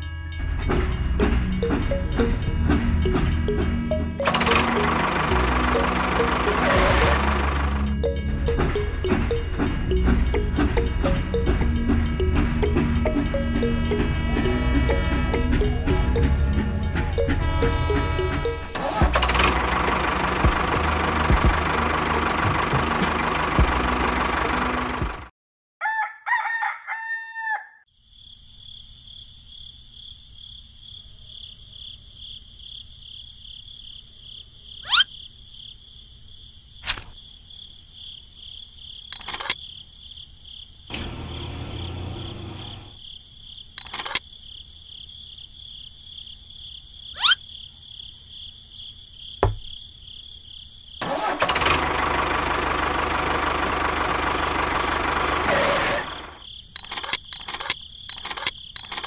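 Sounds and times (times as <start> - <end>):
small engine running: 0.6 - 25.3, 39.2 - 39.6, 40.9 - 43.0, 51.0 - 59.0
pulsing high-pitched background: 1.3 - 19.2
rooster crowing: 25.8 - 27.9
sharp clicks: 39.1 - 39.6, 43.8 - 44.2, 56.8 - 59.0.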